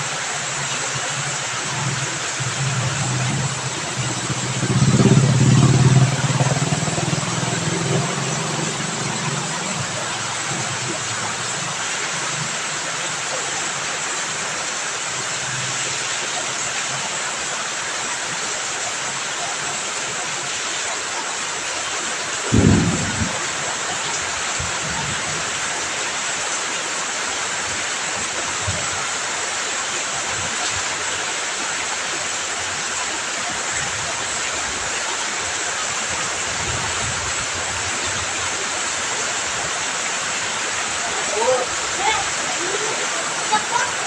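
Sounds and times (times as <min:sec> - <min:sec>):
heavy rain falling: 0:00.0 - 0:44.0
low thumps: 0:22.5 - 0:23.6.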